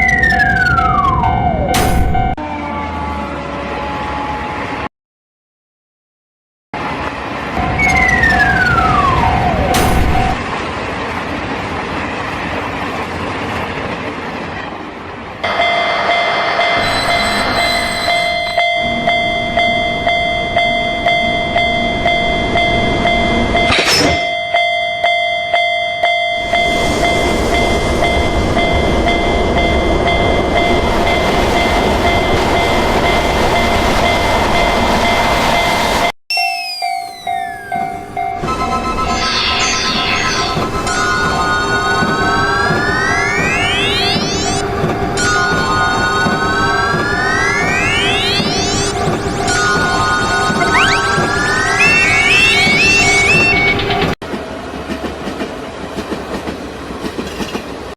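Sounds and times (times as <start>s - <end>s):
passing train rumble: 6.8s - 23.7s, 26.0s - 36.1s, 37.3s - 51.8s, 52.6s - 57.9s
level crossing bell dinging: 15.5s - 26.8s, 36.3s - 41.6s, 47.8s - 54.0s.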